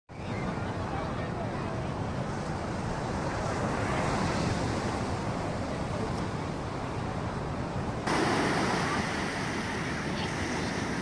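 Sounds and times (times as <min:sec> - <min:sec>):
surf breaking on beach: 0:08.0 - 0:11.0.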